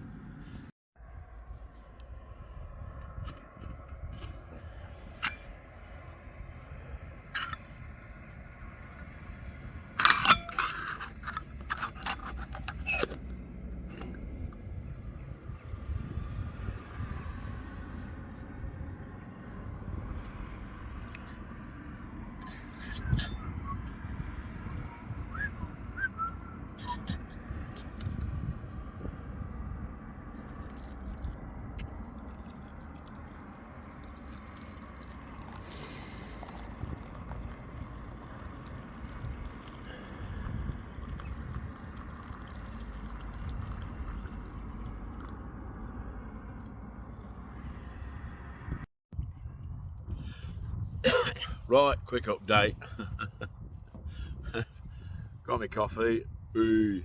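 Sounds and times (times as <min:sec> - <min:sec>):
wind rumble on microphone: 0:00.0 - 0:57.0
mug and spoon clinking: 0:07.4 - 0:07.8, 0:10.0 - 0:13.1.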